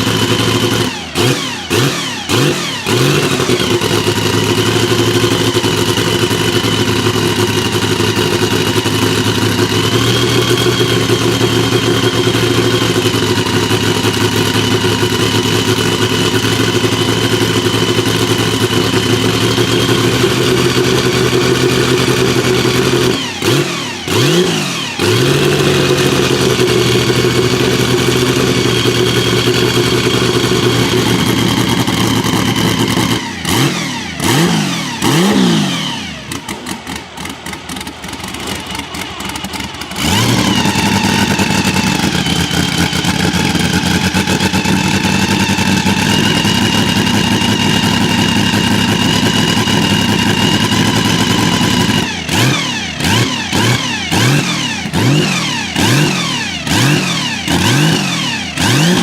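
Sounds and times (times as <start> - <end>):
race car engine at high revs: 0.0 - 59.0.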